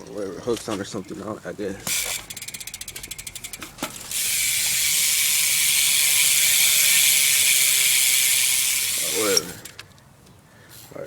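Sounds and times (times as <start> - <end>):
bicycle freewheel ratchet clicking: 1.8 - 9.9.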